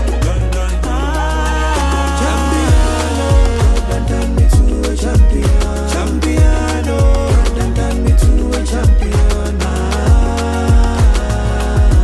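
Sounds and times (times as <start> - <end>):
held bass line: 0.0 - 12.0
instrumental afrobeat music: 0.0 - 12.0
kick drum beat: 2.7 - 5.8, 6.4 - 9.5, 10.1 - 12.0.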